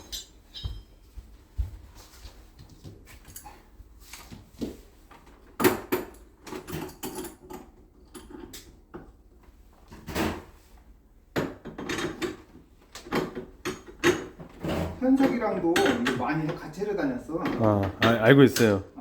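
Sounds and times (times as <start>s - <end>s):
hard objects knocking and clattering: 11.3s - 16.8s.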